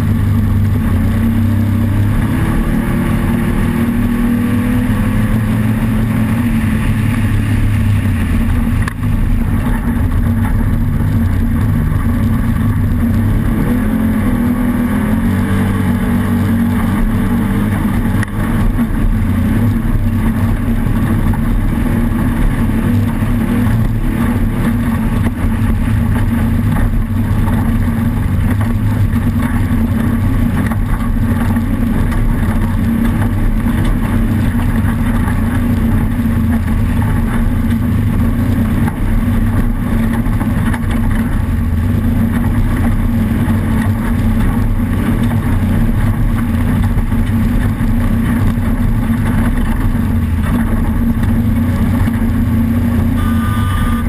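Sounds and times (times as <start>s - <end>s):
loud engine drone: 0.0s - 54.0s.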